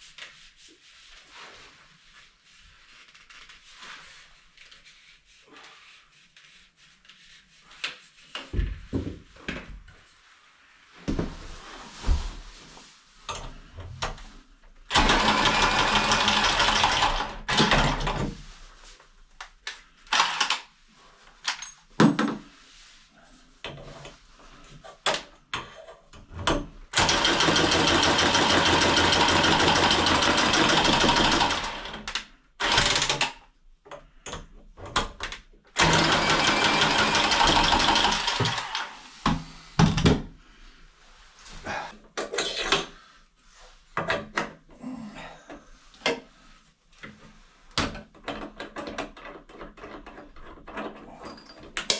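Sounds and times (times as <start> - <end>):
power tool motor running: 14.9 - 17.7, 27.0 - 32.0, 35.8 - 39.0.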